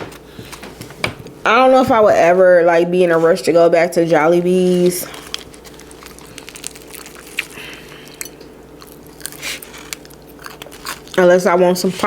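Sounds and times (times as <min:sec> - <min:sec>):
person chewing food: 0:04.5 - 0:12.0.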